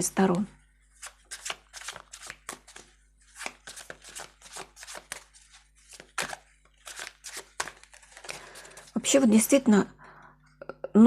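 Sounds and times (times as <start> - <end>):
cards being shuffled: 0.9 - 9.0.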